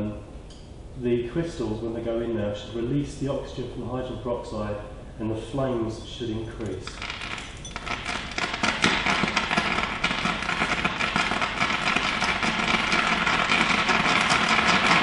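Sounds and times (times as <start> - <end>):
crackling pops: 6.8 - 15.0
flame rushing: 6.9 - 15.0.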